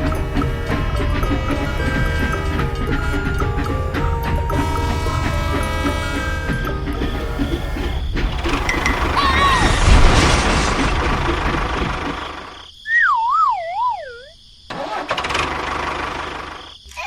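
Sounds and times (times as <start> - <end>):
dense noisy rumble: 6.9 - 12.6.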